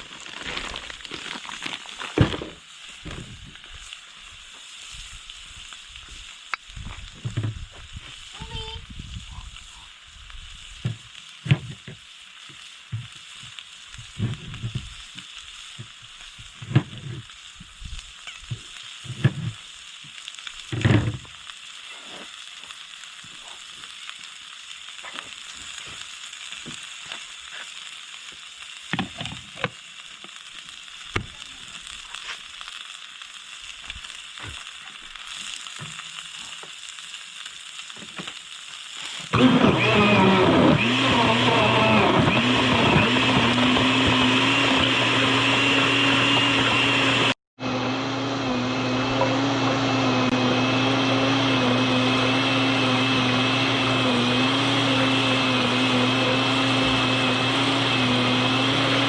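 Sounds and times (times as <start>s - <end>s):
food sizzling in a pan: 0.0s - 59.0s.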